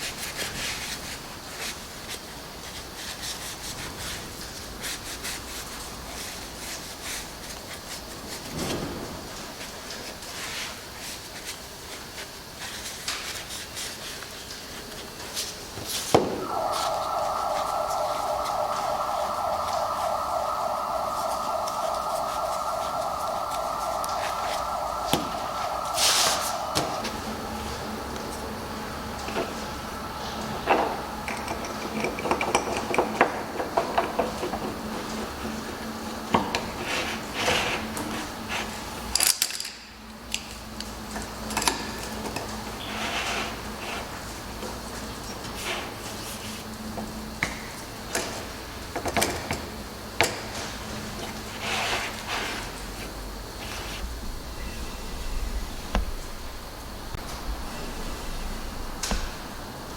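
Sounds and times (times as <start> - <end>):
steady buzzing tone: 16.4 - 31.8.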